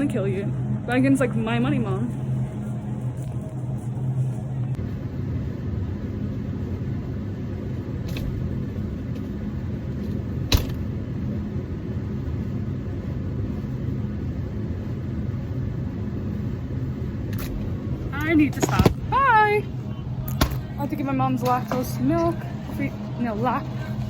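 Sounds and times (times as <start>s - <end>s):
constant hum: 0.0s - 24.0s
low mechanical rumble: 0.0s - 24.0s.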